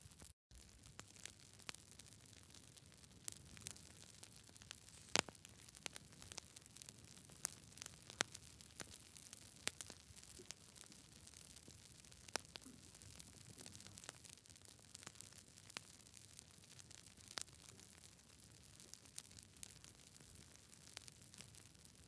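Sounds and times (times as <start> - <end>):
campfire crackling: 0.1 - 22.0
faint hiss: 4.8 - 5.4.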